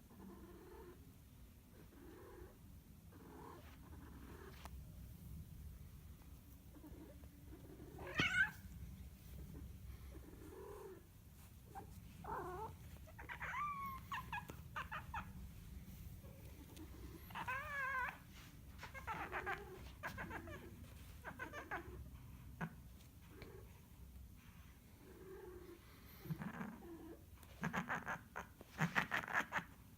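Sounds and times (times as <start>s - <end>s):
cat meowing: 8.0s - 8.6s, 12.2s - 15.3s.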